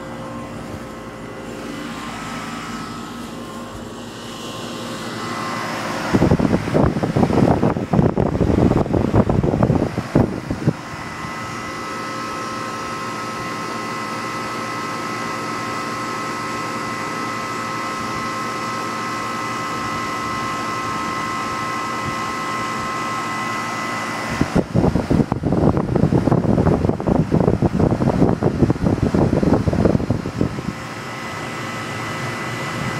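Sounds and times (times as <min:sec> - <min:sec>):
air conditioner humming and whining: 0:00.0 - 0:32.9
wind rumbling on microphone: 0:06.0 - 0:11.7, 0:24.3 - 0:30.8.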